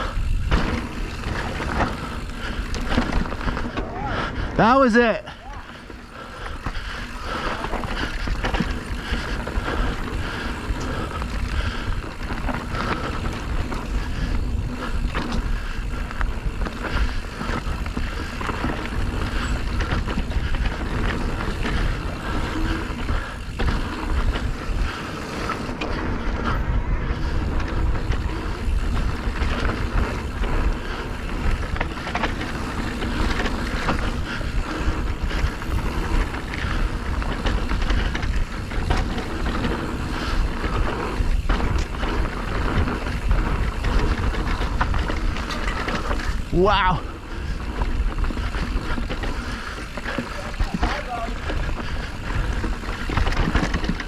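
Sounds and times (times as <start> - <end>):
bike knocks and rattles: 0.0 - 4.1, 5.8 - 54.0
wind buffeting microphone: 5.4 - 54.0.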